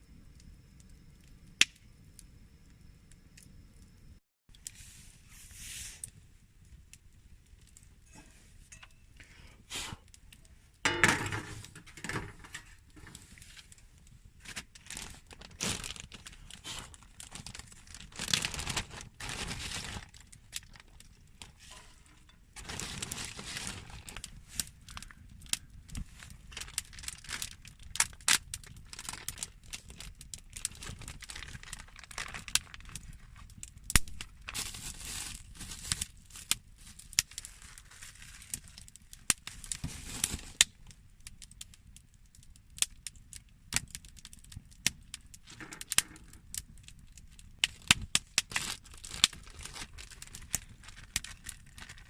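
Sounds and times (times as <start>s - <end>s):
crinkly material rustling: 11.4s - 40.9s, 45.4s - 52.0s.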